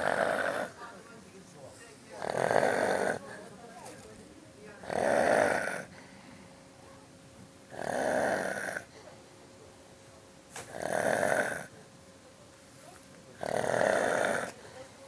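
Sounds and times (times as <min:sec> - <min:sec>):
man snoring: 0:00.0 - 0:00.8, 0:02.2 - 0:03.2, 0:04.8 - 0:05.9, 0:07.7 - 0:08.9, 0:10.7 - 0:11.7, 0:13.4 - 0:14.6.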